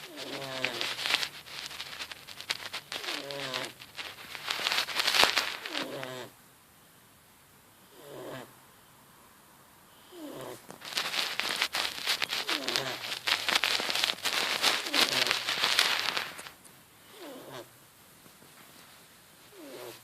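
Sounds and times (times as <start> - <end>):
crackling rustling noise: 0.0 - 6.3, 10.1 - 16.8, 17.4 - 20.0
cat snoring: 5.8 - 6.3, 7.8 - 8.5, 10.0 - 10.6, 17.0 - 17.7, 19.5 - 20.0.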